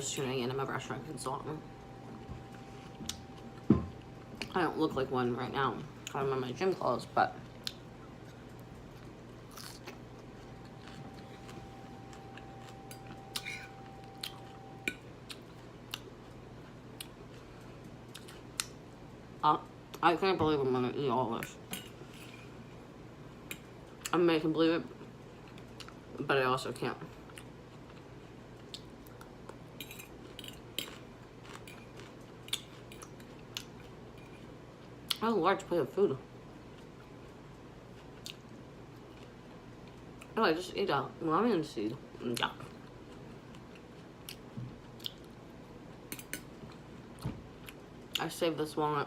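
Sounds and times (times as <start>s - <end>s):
faint steady tone: 10.4s - 15.1s.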